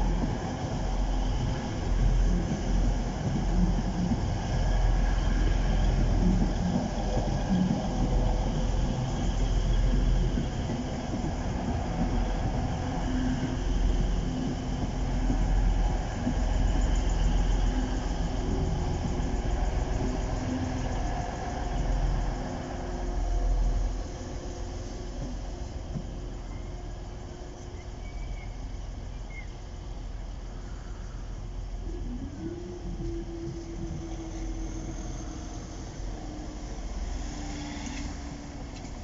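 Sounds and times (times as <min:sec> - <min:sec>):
diesel train engine rumble: 0:00.0 - 0:39.0.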